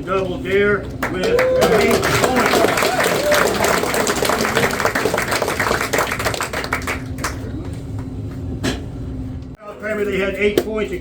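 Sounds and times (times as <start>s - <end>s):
audience applauding: 1.0s - 7.7s.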